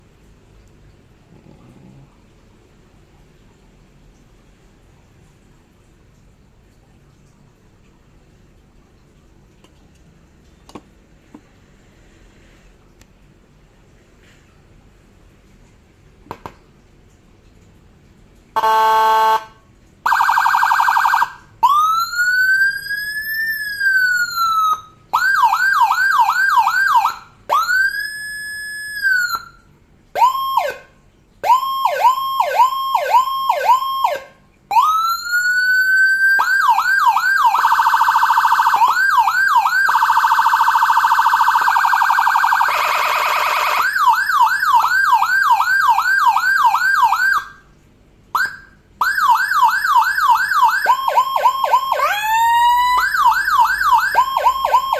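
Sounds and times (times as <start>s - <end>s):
electronic vehicle siren: 18.6s - 47.6s, 48.4s - 54.9s.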